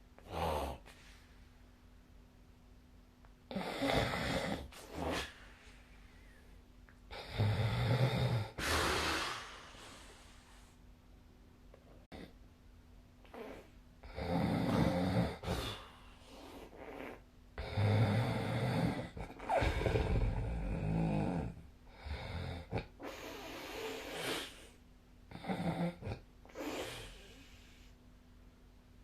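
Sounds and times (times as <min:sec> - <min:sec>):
person snoring with flutter: 0:03.5 - 0:05.5, 0:13.3 - 0:24.6.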